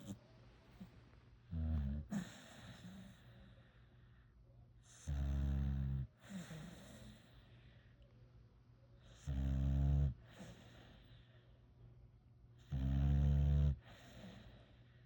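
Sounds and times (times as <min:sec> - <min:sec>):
puppy snoring: 0:01.5 - 0:03.6, 0:04.8 - 0:07.4, 0:09.0 - 0:11.3, 0:12.6 - 0:14.8.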